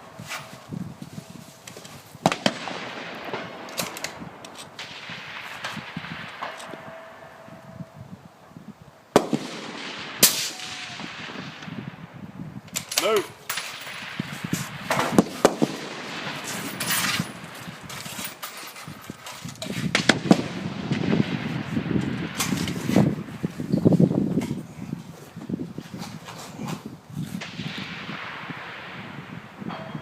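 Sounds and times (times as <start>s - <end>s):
rifle shots echoing: 2.2s - 7.7s, 9.1s - 18.4s, 19.9s - 23.4s, 27.4s - 30.0s
voices: 10.4s - 11.4s, 12.8s - 13.6s.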